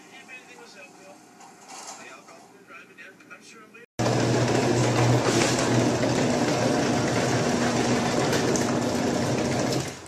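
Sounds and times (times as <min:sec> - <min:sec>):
garage door opener motor humming: 0:04.0 - 0:10.0.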